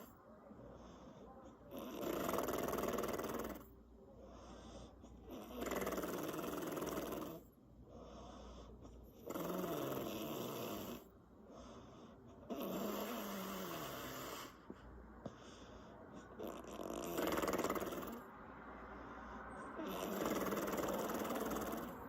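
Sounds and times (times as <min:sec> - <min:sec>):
woman snoring with lips flapping: 0:01.7 - 0:03.7, 0:05.3 - 0:07.5, 0:09.2 - 0:11.1, 0:12.5 - 0:14.6, 0:16.4 - 0:18.3, 0:19.8 - 0:22.0.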